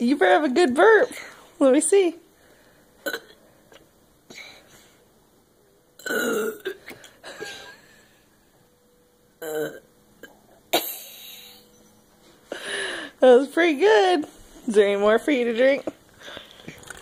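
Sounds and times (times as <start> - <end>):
child burping: 3.0 - 3.4, 6.0 - 7.8, 9.4 - 11.7.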